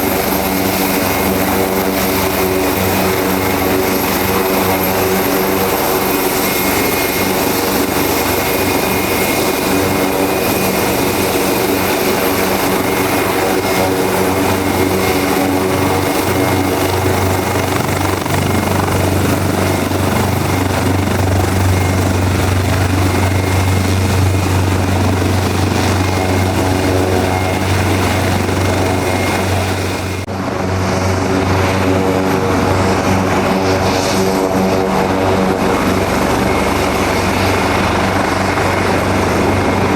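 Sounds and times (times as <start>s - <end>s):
helicopter rotor and turbine whine: 0.0s - 39.9s.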